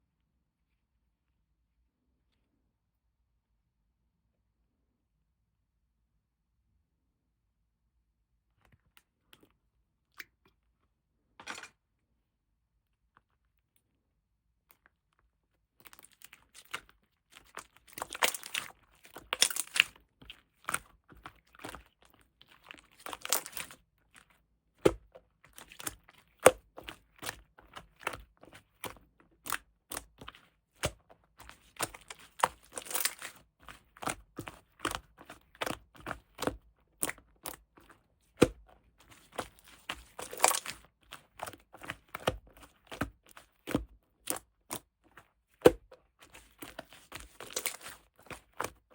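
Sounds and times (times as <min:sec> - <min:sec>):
slime crackling and popping: 0:15.8 - 0:24.2, 0:24.8 - 0:37.7, 0:38.4 - 0:44.9, 0:45.6 - 0:48.9.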